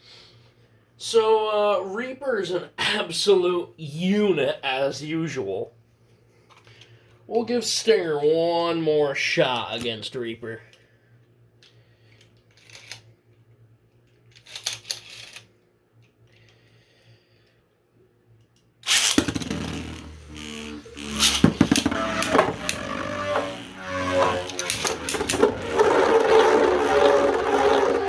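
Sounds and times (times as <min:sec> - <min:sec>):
spinning tops whirring: 0:18.8 - 0:28.0.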